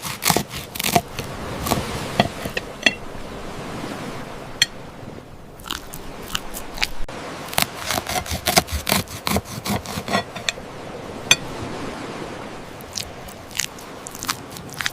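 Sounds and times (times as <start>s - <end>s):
crisp food crunching: 5.6s - 7.0s, 12.9s - 14.9s.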